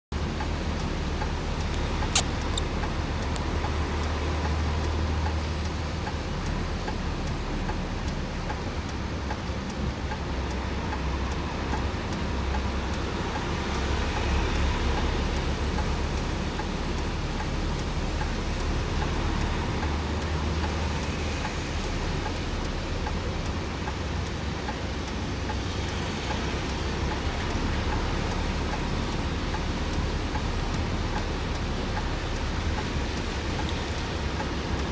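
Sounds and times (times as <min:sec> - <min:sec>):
road traffic rushing: 0:00.1 - 0:34.9.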